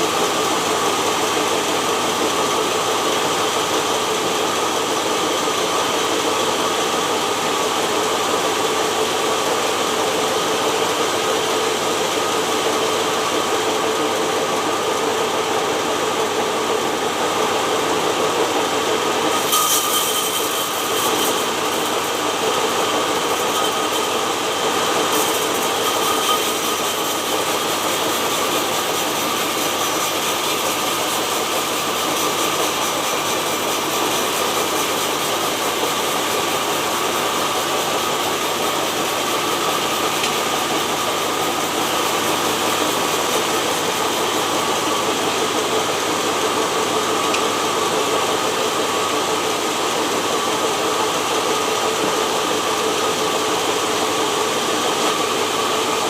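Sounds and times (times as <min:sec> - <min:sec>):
sawmill machinery humming: 0:00.0 - 0:56.0.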